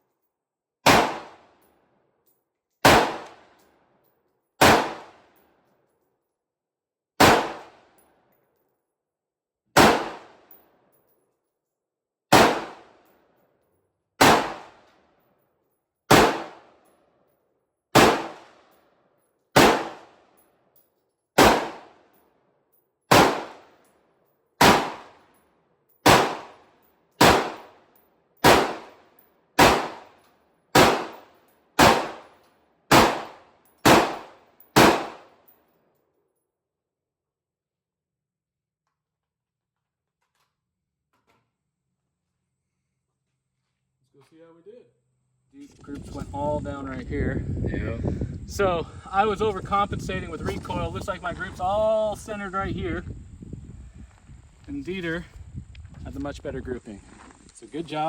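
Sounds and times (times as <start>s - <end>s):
gunshots with ringing tail: 0.9s - 1.4s, 2.8s - 3.4s, 4.6s - 5.2s, 7.2s - 7.8s, 9.8s - 10.4s, 12.3s - 12.9s, 14.2s - 14.8s, 16.1s - 16.6s, 18.0s - 18.5s, 19.6s - 20.1s, 21.4s - 22.0s, 23.1s - 23.7s, 24.6s - 25.2s, 26.0s - 26.6s, 27.2s - 27.8s, 28.4s - 29.0s, 29.6s - 30.2s, 30.8s - 32.3s, 32.9s - 35.3s.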